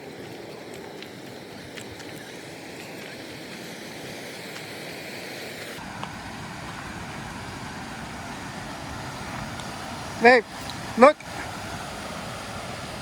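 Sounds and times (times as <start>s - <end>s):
waterfall rushing: 5.7s - 13.0s.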